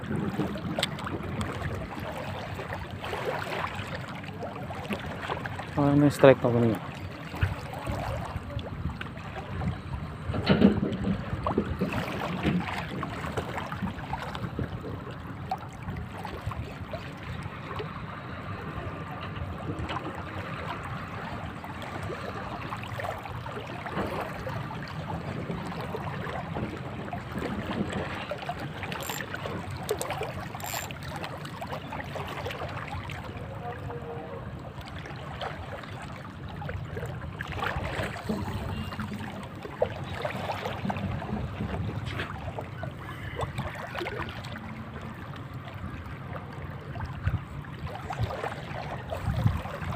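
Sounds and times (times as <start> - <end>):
sea water washing: 0.0 - 9.9.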